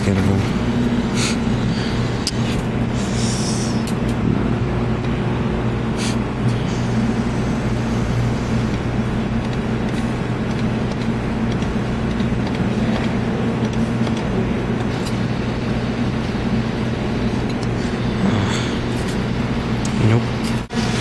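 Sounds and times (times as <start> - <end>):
claw machine mechanical hum: 0.0 - 21.0.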